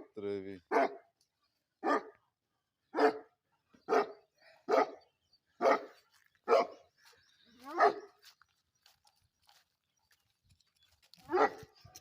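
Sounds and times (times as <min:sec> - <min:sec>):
dog barking: 0:00.7 - 0:01.1, 0:01.8 - 0:02.2, 0:02.9 - 0:03.3, 0:03.9 - 0:05.0, 0:05.6 - 0:06.8, 0:07.7 - 0:08.2, 0:11.3 - 0:11.8.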